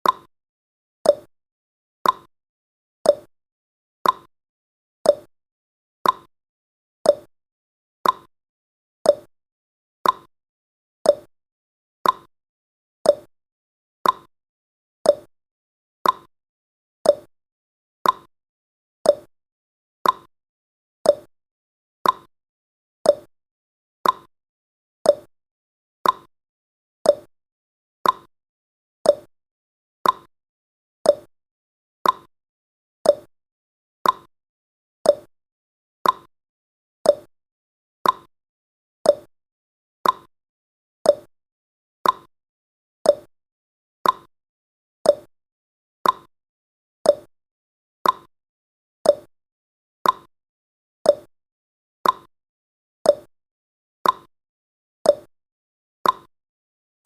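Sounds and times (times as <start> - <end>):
timer ticking: 0.0 - 0.3, 1.1 - 1.3, 2.0 - 2.3, 3.1 - 3.3, 4.0 - 4.3, 5.1 - 5.3, 6.0 - 6.3, 7.1 - 7.3, 8.0 - 8.3, 9.1 - 9.3, 10.0 - 10.3, 11.1 - 11.3, 12.0 - 12.3, 13.1 - 13.3, 14.0 - 14.3, 15.1 - 15.3, 16.0 - 16.3, 17.0 - 17.3, 18.0 - 18.3, 19.1 - 19.3, 20.0 - 20.3, 21.1 - 21.3, 22.0 - 22.3, 23.1 - 23.3, 24.0 - 24.3, 25.1 - 25.3, 26.0 - 26.3, 27.1 - 27.3, 28.0 - 28.3, 29.0 - 29.3, 30.0 - 30.3, 31.0 - 31.3, 32.0 - 32.3, 33.0 - 33.3, 34.0 - 34.3, 35.1 - 35.3, 36.0 - 36.3, 37.1 - 37.3, 38.0 - 38.3, 39.1 - 39.3, 40.0 - 40.3, 41.1 - 41.3, 42.0 - 42.3, 43.1 - 43.3, 44.0 - 44.3, 45.1 - 45.3, 46.0 - 46.3, 47.1 - 47.3, 48.0 - 48.3, 49.1 - 49.3, 50.0 - 50.3, 51.1 - 51.3, 52.0 - 52.3, 53.1 - 53.3, 54.0 - 54.3, 55.1 - 55.3, 56.0 - 56.3.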